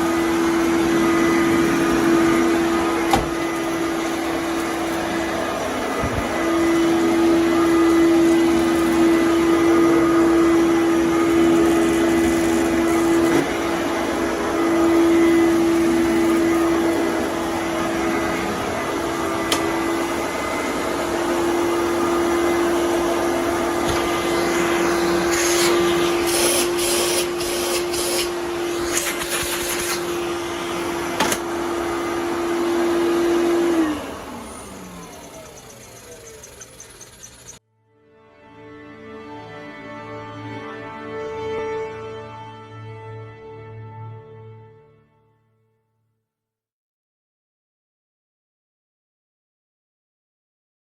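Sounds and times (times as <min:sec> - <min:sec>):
vacuum cleaner running: 0:00.0 - 0:37.6.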